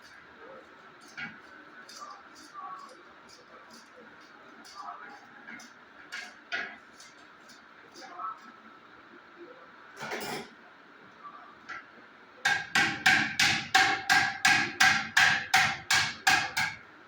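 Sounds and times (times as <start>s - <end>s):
hammer striking metal: 12.5s - 16.8s.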